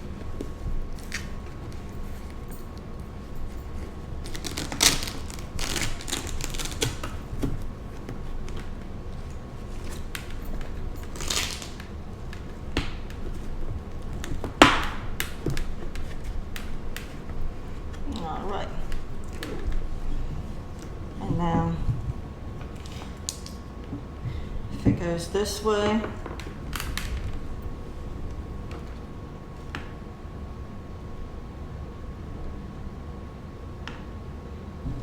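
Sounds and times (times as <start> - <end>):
padding rustles: 0.0 - 25.1.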